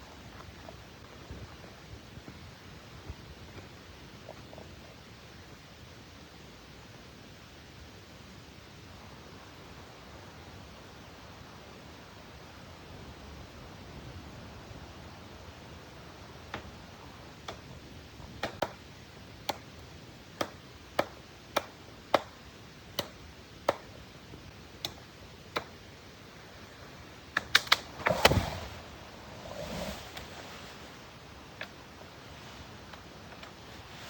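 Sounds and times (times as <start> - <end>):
soft rustle: 27.8 - 34.0.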